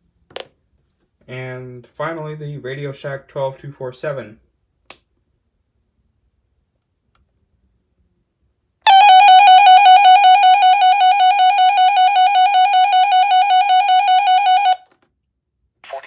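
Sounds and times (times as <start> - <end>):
warbling electronic alert siren: 8.9 - 14.8.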